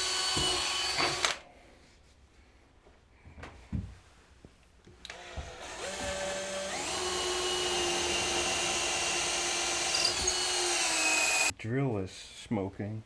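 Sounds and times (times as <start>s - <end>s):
electric drill boring: 0.0s - 1.4s, 5.1s - 11.5s.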